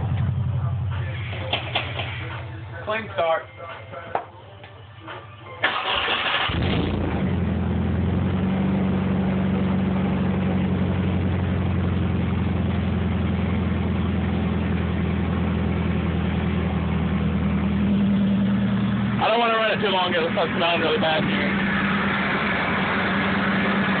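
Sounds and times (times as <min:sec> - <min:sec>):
car engine idling: 0:00.0 - 0:24.0
car engine cranking and starting: 0:05.5 - 0:24.0.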